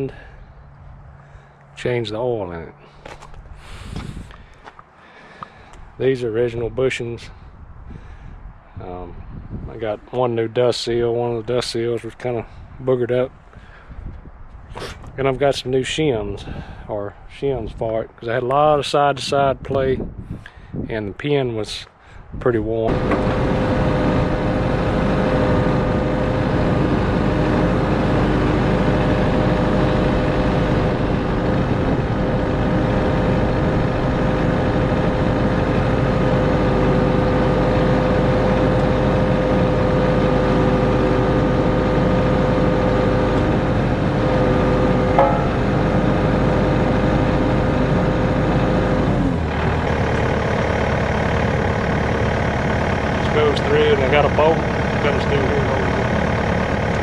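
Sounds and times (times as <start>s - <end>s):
excavator diesel engine running: 22.9s - 57.0s.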